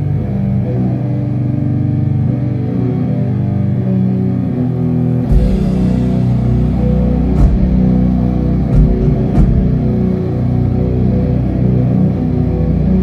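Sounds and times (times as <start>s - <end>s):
low guitar and bass chords: 0.0s - 13.0s
heavy drum hits: 5.3s - 10.2s.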